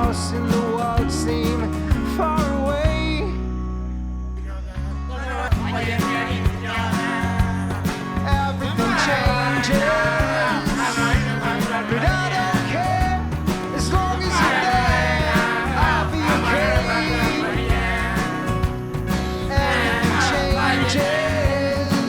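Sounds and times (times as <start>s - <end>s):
steady drum beat: 0.0s - 3.2s, 5.6s - 22.0s
bass: 0.0s - 22.0s
pop-rock band music: 0.0s - 22.0s
person singing: 8.6s - 22.0s.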